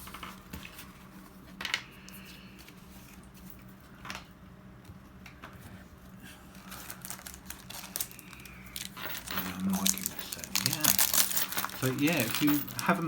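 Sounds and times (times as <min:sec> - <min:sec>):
low steady hum: 0:00.0 - 0:13.0
trading cards clicking and rustling: 0:06.5 - 0:13.0.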